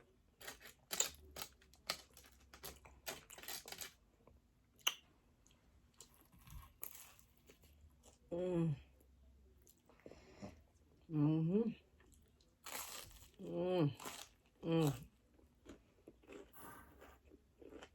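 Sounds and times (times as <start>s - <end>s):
mouth chewing crunchy food: 12.0s - 17.9s.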